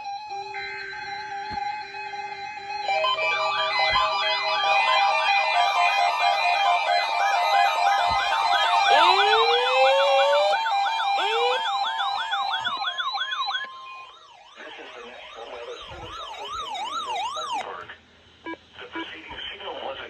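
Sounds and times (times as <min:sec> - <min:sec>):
electronic warbling siren: 0:00.0 - 0:17.6
pulsing tone: 0:00.0 - 0:17.6
slow up-and-down wail: 0:05.0 - 0:12.9
rising whoops: 0:08.2 - 0:12.9.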